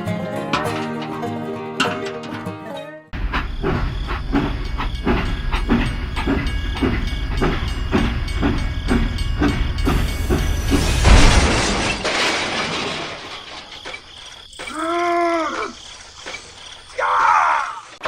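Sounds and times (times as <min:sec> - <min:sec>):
machine chugging: 0:03.2 - 0:12.2.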